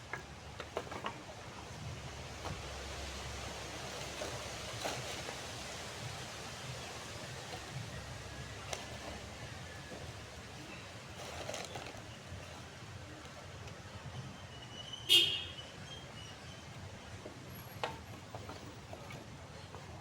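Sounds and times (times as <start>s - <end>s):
campfire burning: 1.4s - 13.0s.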